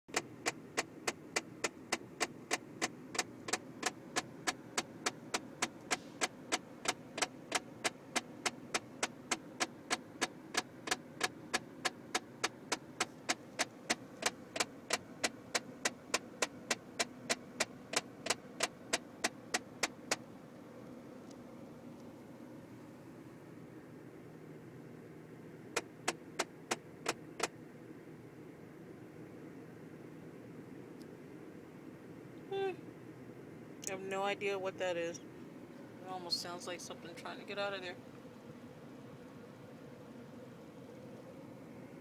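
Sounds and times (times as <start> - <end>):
rapid clicking in car: 0.1 - 22.1, 25.7 - 27.6
steady low hum: 0.1 - 42.0.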